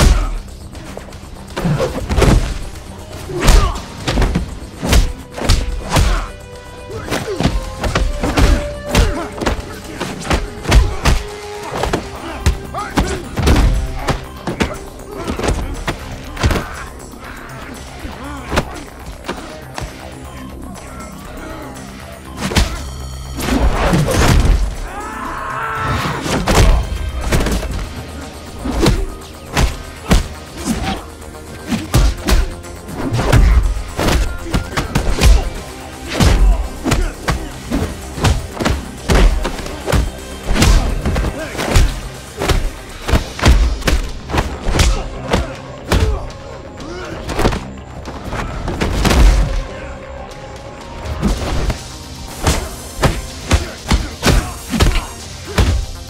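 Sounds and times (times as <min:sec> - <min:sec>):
background music: 0:00.0 - 0:56.0
punch and kick impacts: 0:01.6 - 0:02.7, 0:03.4 - 0:06.3, 0:31.9 - 0:46.2.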